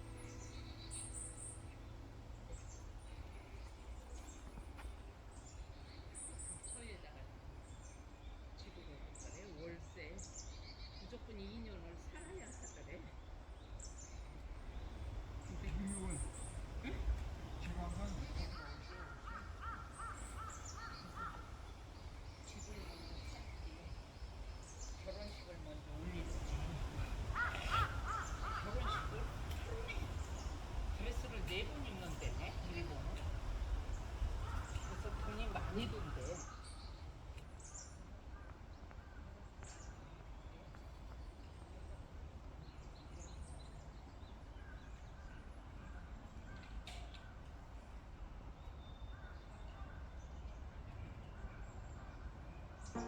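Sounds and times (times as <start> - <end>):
faint low rumble: 0.0 - 9.0
small birds chirping: 0.0 - 53.0.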